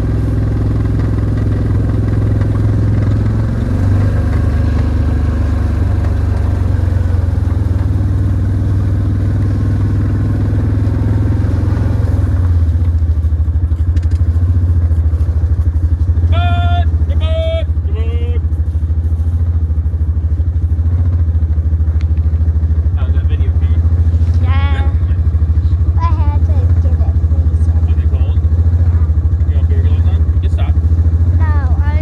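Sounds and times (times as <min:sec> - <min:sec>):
rattling: 0:00.0 - 0:17.1
farm vehicle engine running: 0:00.0 - 0:32.0.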